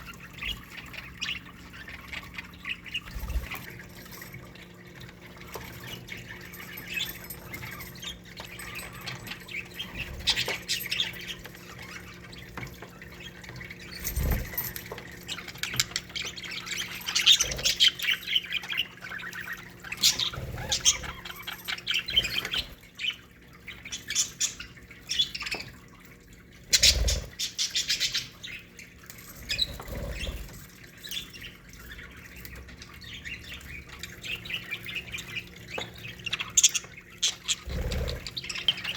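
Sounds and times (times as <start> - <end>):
budgerigars chattering and squawking: 5.8 - 25.8, 26.7 - 28.7, 32.5 - 38.9.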